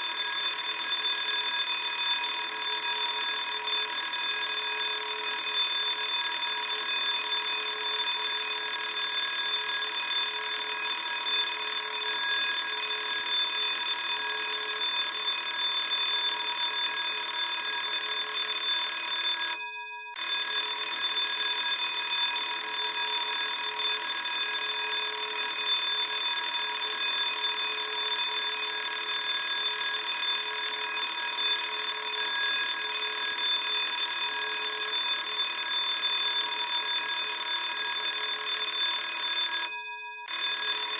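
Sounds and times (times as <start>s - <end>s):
school bell ringing: 30.4s - 36.4s.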